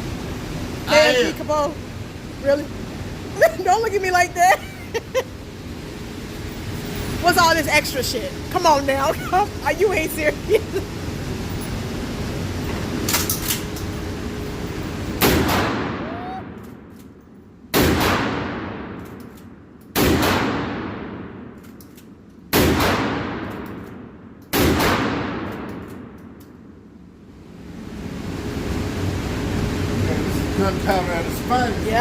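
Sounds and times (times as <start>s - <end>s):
shotgun shots: 15.2s - 16.0s, 17.7s - 19.0s, 19.9s - 21.6s, 22.5s - 26.2s.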